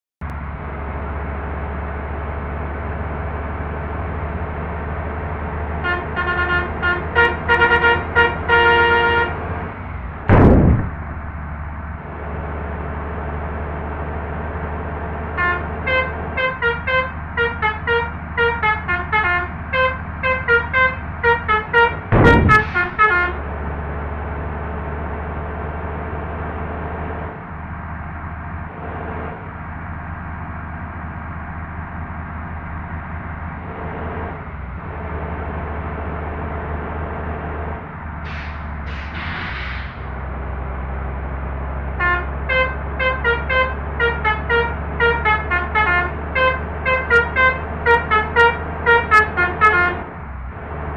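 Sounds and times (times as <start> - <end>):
bus engine rumbling: 0.2 - 50.9
bus horn playing musical tune: 5.8 - 9.5, 15.4 - 23.4, 42.0 - 50.1
loud horn blast: 5.8 - 9.5, 15.4 - 23.4, 42.0 - 50.1.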